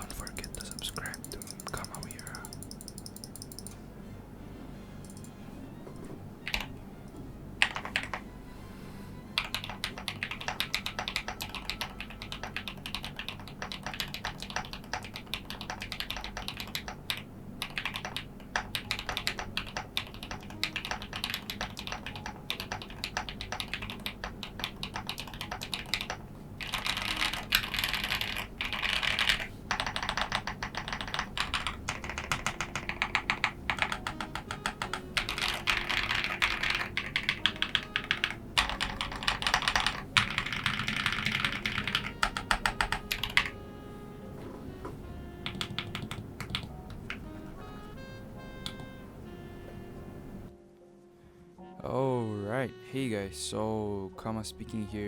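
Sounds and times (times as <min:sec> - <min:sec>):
typing on mechanical keyboard: 0:00.0 - 0:03.8, 0:06.5 - 0:06.7, 0:07.6 - 0:08.2, 0:09.4 - 0:43.6, 0:45.4 - 0:47.2.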